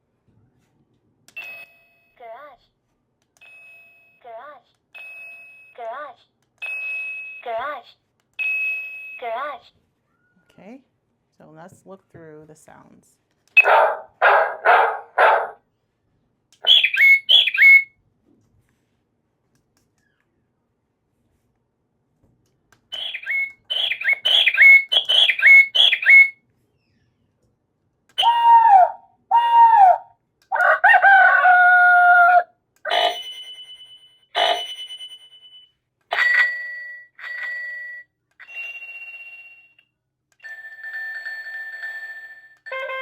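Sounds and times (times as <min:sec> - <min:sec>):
doorbell chime tunes: 0:32.9 - 0:39.8.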